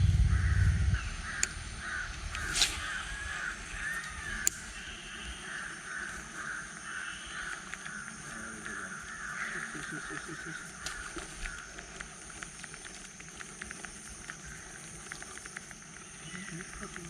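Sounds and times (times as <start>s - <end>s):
steady high-pitched drone: 0.0s - 7.4s
crows cawing: 0.2s - 17.0s
faint ticks: 1.4s - 17.0s.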